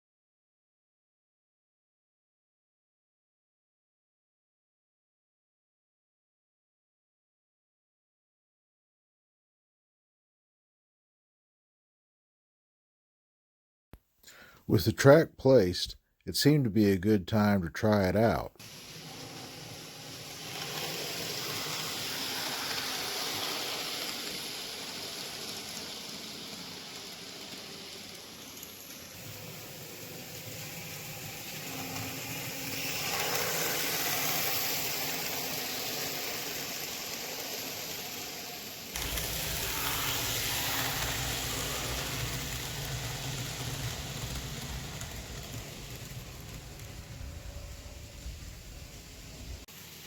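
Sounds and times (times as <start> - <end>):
model train whirring on rails: 17.4 - 50.0.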